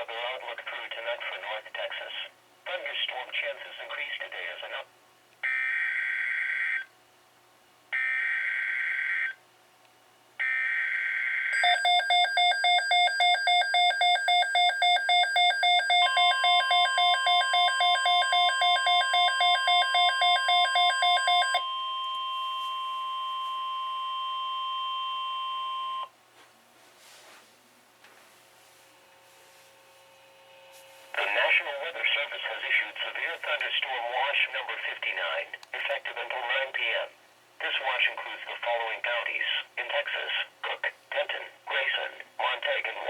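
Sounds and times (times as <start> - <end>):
steady warning alarm tone: 5.4 - 6.9, 8.0 - 9.4, 10.4 - 26.1.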